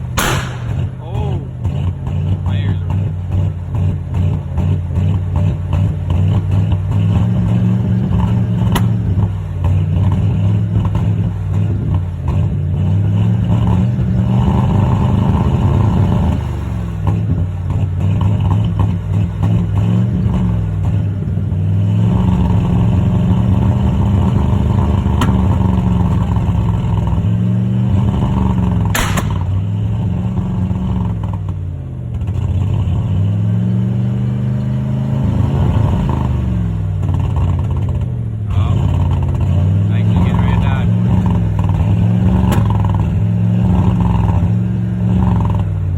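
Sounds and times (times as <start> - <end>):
truck engine speed rising and falling: 0.0 - 11.9, 18.6 - 31.5, 33.2 - 45.9
sharp clicks: 0.2 - 1.0, 29.0 - 29.5.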